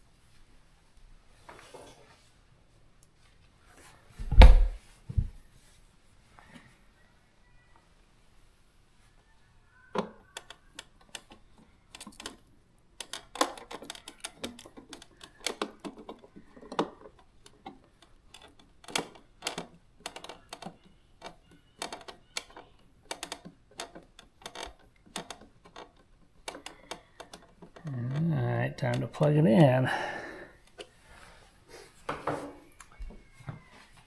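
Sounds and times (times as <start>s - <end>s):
sharp plastic clicks and knocks: 10.0s - 29.2s.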